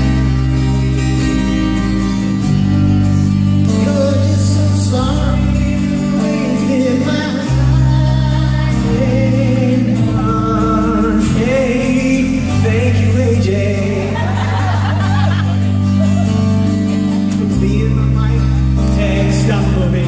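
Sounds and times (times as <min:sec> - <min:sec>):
band playing pop music: 0:00.0 - 0:20.0
male vocal group singing: 0:03.7 - 0:15.0, 0:18.7 - 0:20.0.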